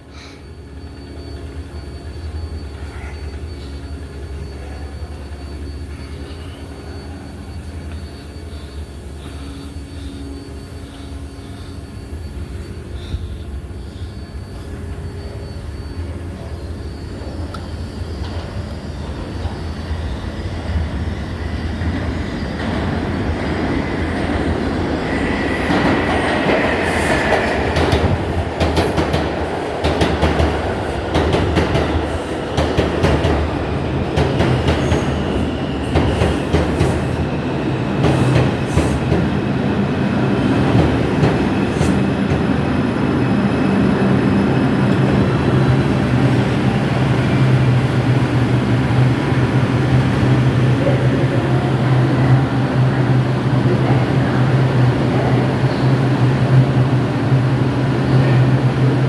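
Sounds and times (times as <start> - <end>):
train motor hum and whine: 0.0 - 59.0
train wheels clicking over rail joints: 24.2 - 37.3.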